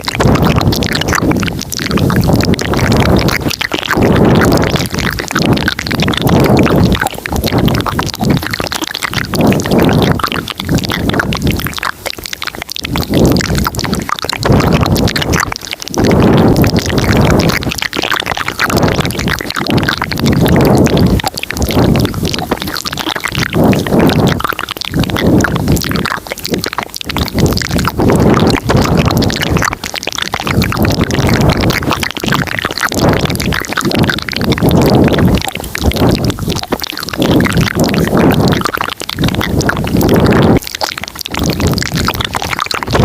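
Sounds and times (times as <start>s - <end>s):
wet mouth clicks and smacks: 0.0s - 43.0s.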